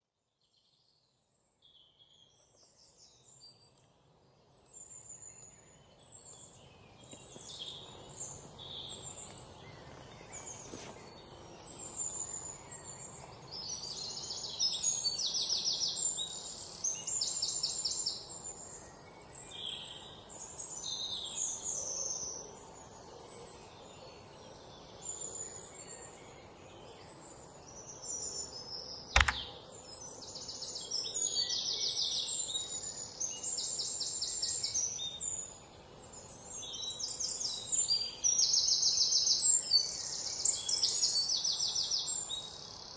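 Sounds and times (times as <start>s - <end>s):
sharp click: 29.2s - 29.6s.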